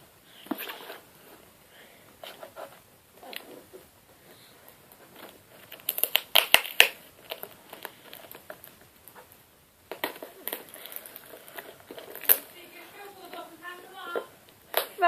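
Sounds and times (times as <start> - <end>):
cardboard and packing tape crinkling: 5.0 - 15.0
sharp tape cracks: 5.7 - 8.5, 12.0 - 12.5.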